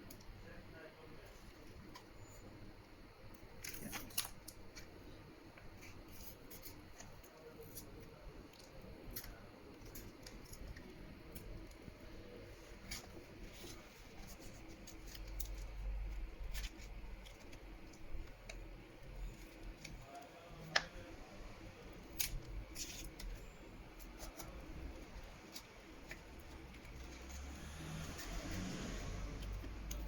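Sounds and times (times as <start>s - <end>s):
plastic card clicking and scraping: 12.2s - 21.3s, 22.0s - 30.0s.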